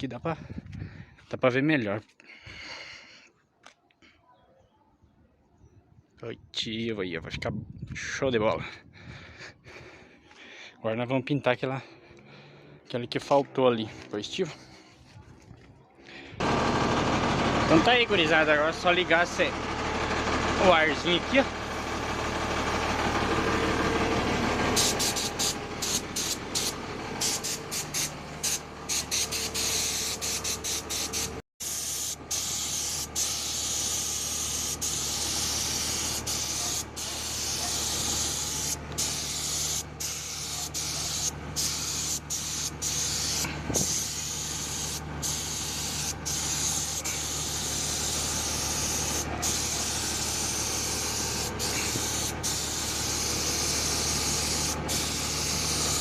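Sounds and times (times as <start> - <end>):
truck engine idling: 11.6 - 56.0
paint spray gun hissing: 24.6 - 56.0.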